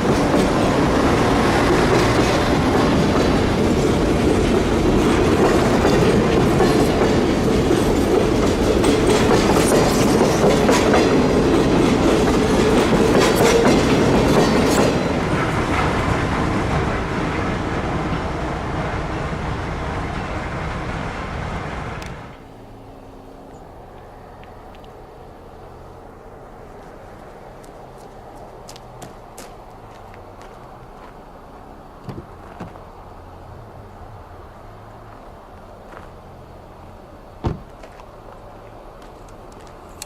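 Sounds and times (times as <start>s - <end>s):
train wheels clicking over rail joints: 0.0s - 21.0s.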